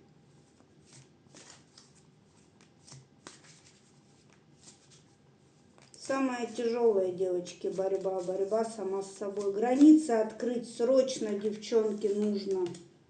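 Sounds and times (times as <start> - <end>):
cards shuffling: 0.4 - 6.8, 7.4 - 10.3, 11.0 - 12.9.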